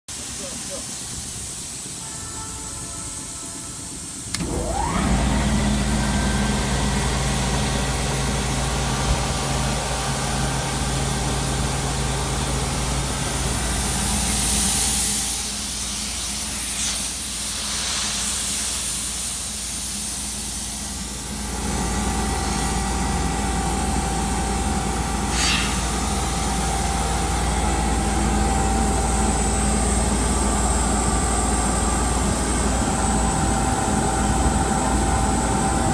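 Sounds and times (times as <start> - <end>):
loud hiss: 0.1 - 4.7, 7.5 - 33.9
air compressor running with low hum: 0.1 - 35.9.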